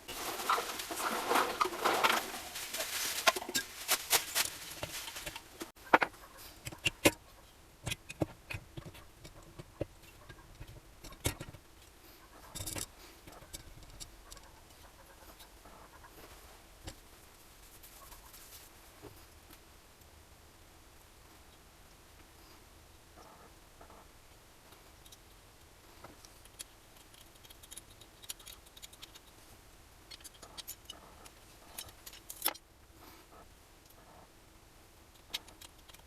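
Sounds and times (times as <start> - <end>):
metal parts scraping and clicking: 12.4 - 14.5, 26.3 - 29.4, 30.1 - 32.6.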